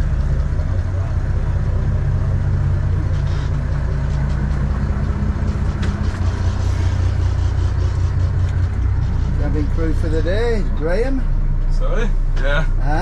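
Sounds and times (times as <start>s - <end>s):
boat engine droning: 0.0s - 13.0s.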